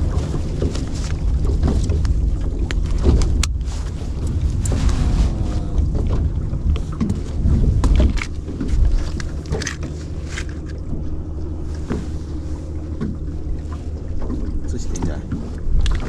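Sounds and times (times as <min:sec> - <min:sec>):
boat engine running: 0:00.0 - 0:16.0
wind on microphone: 0:00.0 - 0:16.0.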